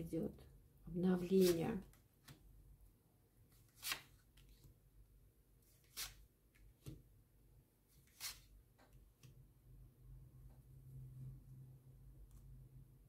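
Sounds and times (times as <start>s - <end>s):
cards rustling on a table: 3.5s - 4.8s, 5.7s - 7.0s, 7.9s - 9.3s.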